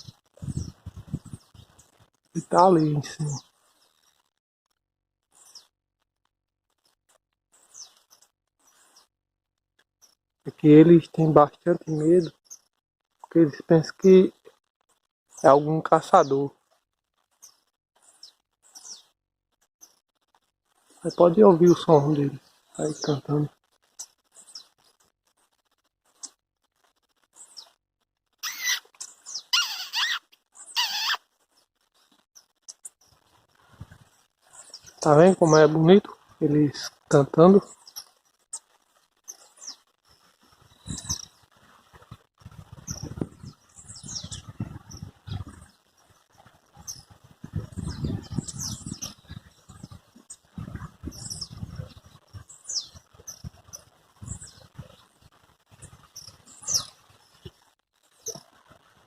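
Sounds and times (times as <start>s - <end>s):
birds chirping and singing: 0.0s - 4.1s, 5.3s - 5.7s, 7.6s - 9.1s, 10.0s - 12.7s, 15.3s - 16.5s, 17.4s - 19.1s, 20.9s - 25.0s, 28.4s - 57.5s
bird singing: 17.4s - 19.1s, 28.4s - 31.2s, 40.6s - 41.4s, 42.9s - 45.8s, 46.8s - 54.7s, 55.8s - 57.0s.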